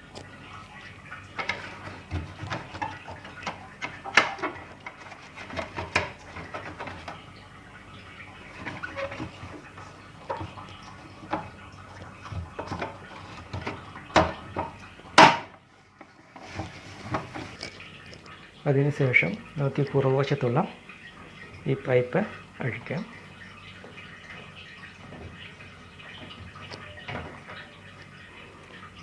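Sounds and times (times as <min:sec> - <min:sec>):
washing machine cover clicking: 0:00.6 - 0:15.6, 0:16.4 - 0:17.6.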